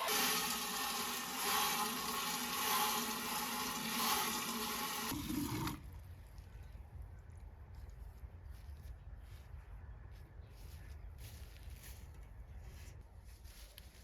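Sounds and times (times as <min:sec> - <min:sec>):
water running from a tap: 0:00.0 - 0:05.8.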